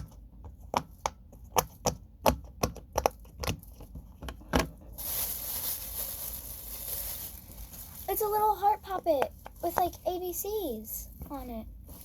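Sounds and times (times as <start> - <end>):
rustling: 4.9 - 10.0.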